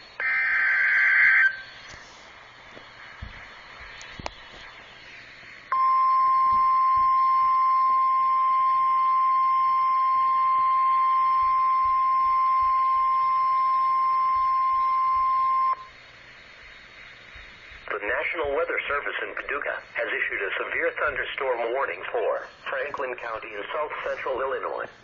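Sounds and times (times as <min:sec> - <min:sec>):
faint radio hiss: 0:00.0 - 0:25.0
steady alarm beep: 0:05.7 - 0:15.9.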